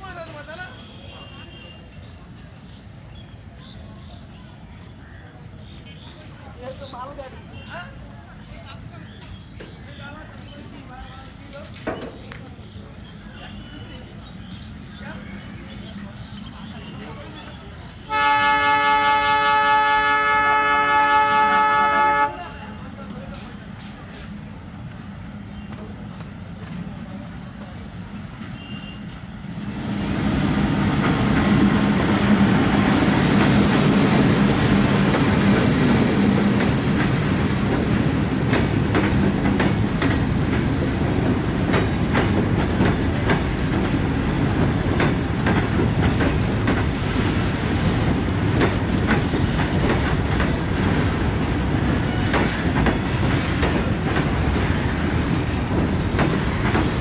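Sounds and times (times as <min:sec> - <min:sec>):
train wheels clattering on rails: 0:28.2 - 0:57.0.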